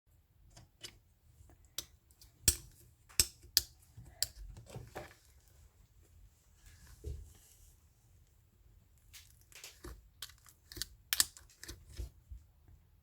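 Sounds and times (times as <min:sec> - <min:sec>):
slime squishing: 0:08.9 - 0:12.2.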